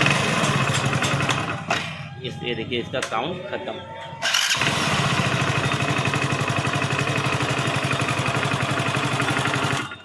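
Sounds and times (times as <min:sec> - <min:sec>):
motorcycle engine idling: 0:00.0 - 0:02.1, 0:04.2 - 0:10.0.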